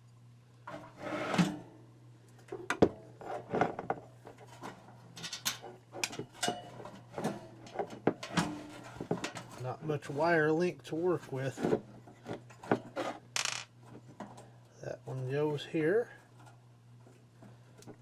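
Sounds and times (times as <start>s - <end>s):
parts clicking and knocking: 12.3s - 14.4s.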